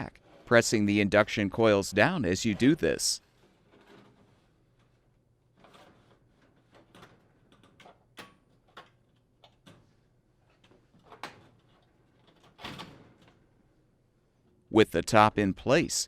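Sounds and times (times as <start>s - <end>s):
panel scraping: 0.0s - 8.8s.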